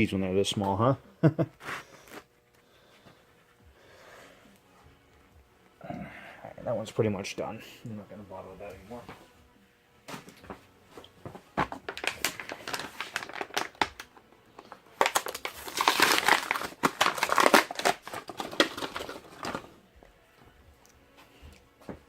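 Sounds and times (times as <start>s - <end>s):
packaging crinkling: 11.7s - 19.8s.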